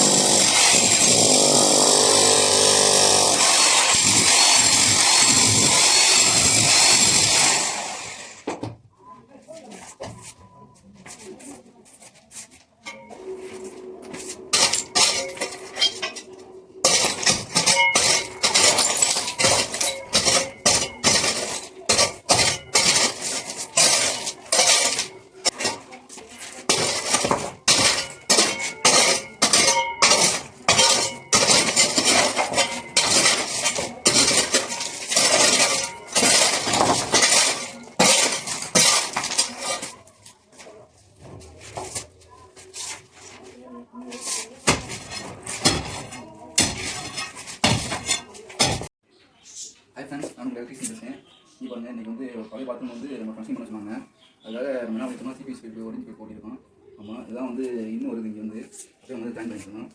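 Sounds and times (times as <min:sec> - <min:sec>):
tool chipping into tile: 0:16.9 - 0:25.8, 0:26.7 - 0:39.9, 0:44.6 - 0:48.8.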